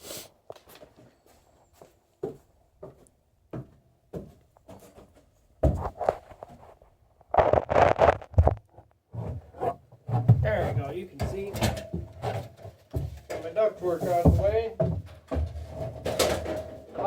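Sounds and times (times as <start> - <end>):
rustling and scraping: 4.6 - 17.0.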